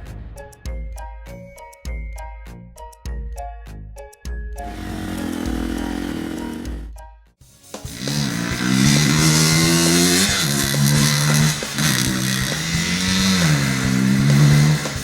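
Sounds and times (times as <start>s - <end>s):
vehicle engine revving: 4.7s - 6.9s, 7.9s - 15.0s.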